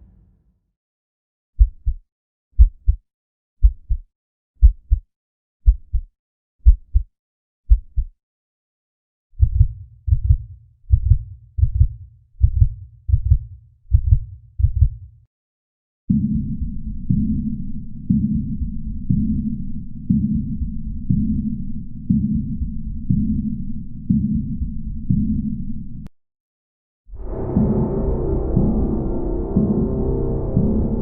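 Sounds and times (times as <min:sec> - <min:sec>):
heartbeat: 0:01.6 - 0:03.0, 0:03.6 - 0:07.1, 0:07.7 - 0:08.2, 0:09.4 - 0:15.1, 0:16.1 - 0:25.8, 0:27.2 - 0:31.0
low rumble: 0:27.2 - 0:31.0.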